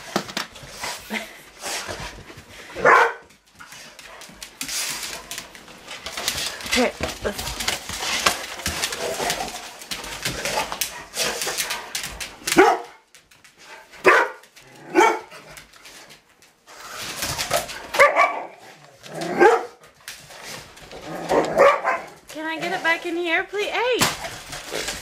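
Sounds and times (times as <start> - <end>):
dog barking: 2.8 - 3.3, 12.6 - 13.0, 14.0 - 15.3, 17.9 - 18.6, 19.4 - 19.8, 21.5 - 22.2.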